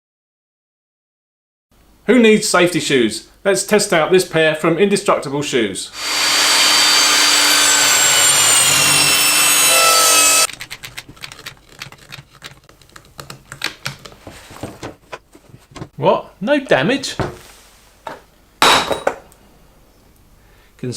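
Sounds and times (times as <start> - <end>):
power cutting tool whining: 6.0 - 10.5
faint knocks and handling: 11.9 - 16.0, 17.2 - 19.4.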